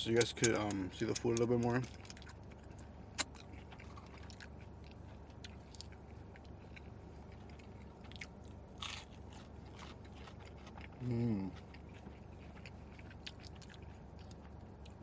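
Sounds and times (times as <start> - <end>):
chewing food: 0.1 - 15.0.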